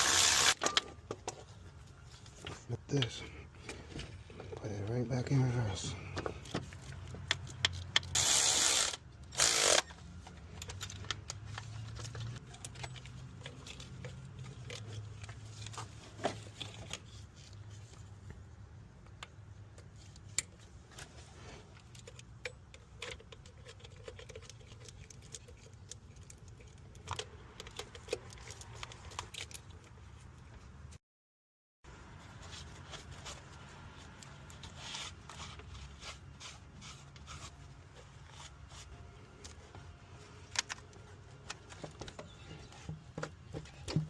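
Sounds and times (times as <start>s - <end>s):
ratchet wrench clicking: 0.0s - 0.6s, 7.6s - 9.9s.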